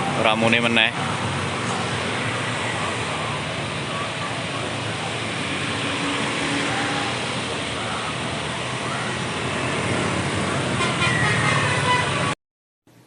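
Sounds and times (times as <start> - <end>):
road traffic passing: 0.0 - 12.4.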